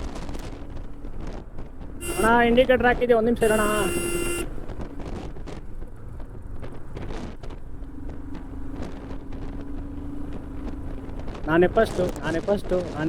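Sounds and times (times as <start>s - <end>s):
motorcycle engine rumble: 0.0s - 13.0s
wind buffeting microphone: 0.0s - 13.0s.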